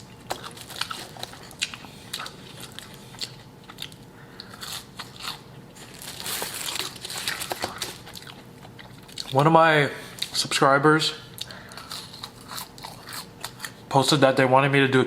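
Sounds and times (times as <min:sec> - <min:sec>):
person chewing crunchy food: 0:00.0 - 0:09.4, 0:11.3 - 0:13.9.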